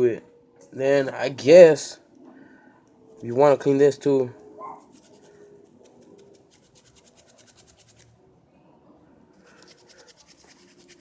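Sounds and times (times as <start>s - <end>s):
toothbrush scrubbing a port: 4.7s - 8.1s, 9.4s - 11.0s.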